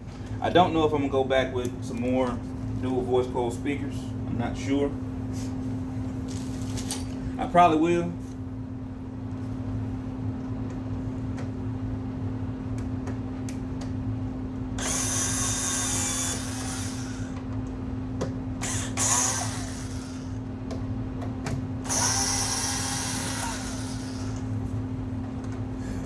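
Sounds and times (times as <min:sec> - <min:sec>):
steady low hum: 0:00.0 - 0:26.0
power drill running: 0:14.8 - 0:17.4, 0:18.6 - 0:20.4, 0:21.8 - 0:24.6.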